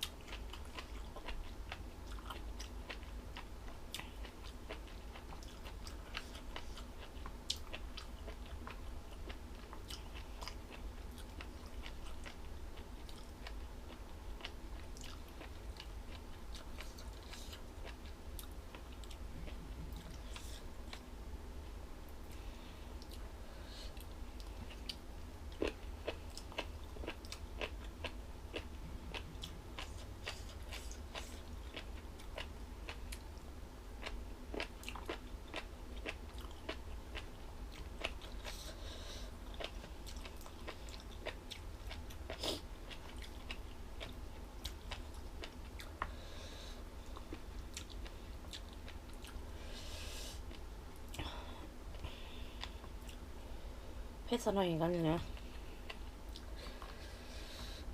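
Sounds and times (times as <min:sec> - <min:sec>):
person chewing crunchy food: 0:00.0 - 0:21.1, 0:23.9 - 0:53.3, 0:55.3 - 0:57.9
steady low hum: 0:00.0 - 0:57.9.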